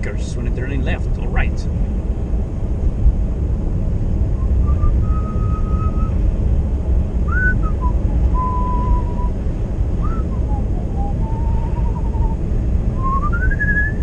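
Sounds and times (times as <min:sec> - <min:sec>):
car driving rumble: 0:00.0 - 0:14.0
man whistling a tune: 0:04.4 - 0:06.2, 0:07.3 - 0:09.3, 0:10.0 - 0:12.4, 0:13.0 - 0:14.0.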